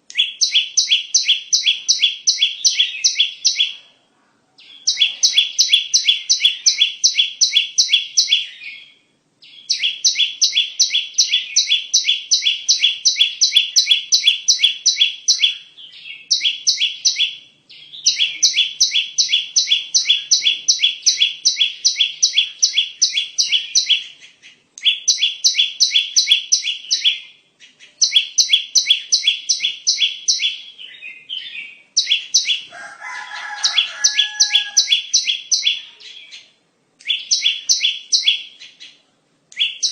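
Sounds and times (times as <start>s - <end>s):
rapid sharp bird chirps: 4.6s - 32.7s, 33.4s - 39.0s, 39.6s - 39.9s
lower bird call: 4.6s - 36.5s.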